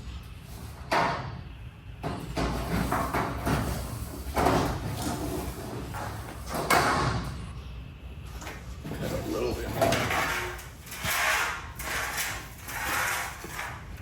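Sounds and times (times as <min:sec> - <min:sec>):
knocks and scrapes: 0:02.0 - 0:07.2, 0:08.8 - 0:14.0
metal garage door rattling: 0:08.7 - 0:14.0.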